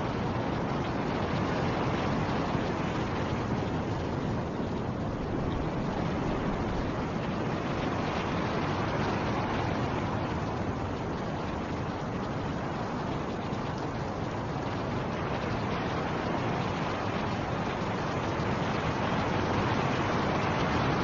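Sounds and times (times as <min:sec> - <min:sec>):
blizzard wind rushing: 0:00.0 - 0:21.0.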